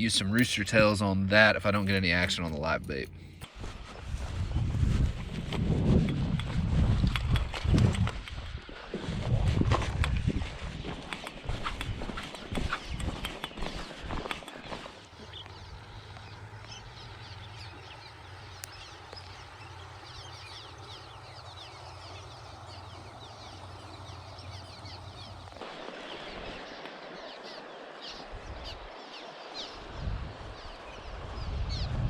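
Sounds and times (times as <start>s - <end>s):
birds chirping: 0.0s - 3.4s, 12.0s - 31.9s
steady low hum: 15.1s - 25.6s.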